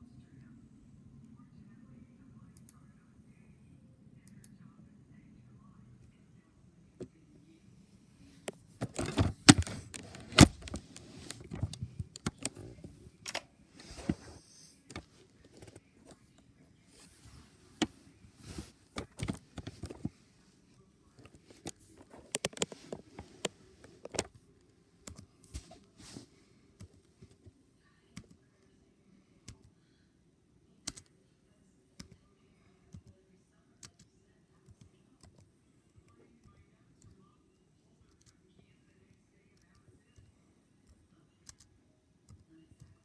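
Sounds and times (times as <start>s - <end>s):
mechanical keyboard typing: 8.8s - 13.4s, 30.9s - 31.1s.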